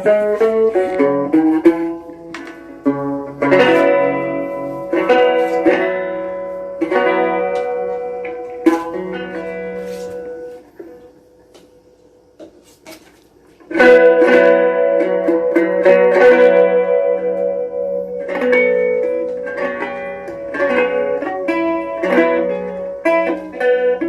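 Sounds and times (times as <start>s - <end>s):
acoustic guitar playing: 0.0s - 24.0s.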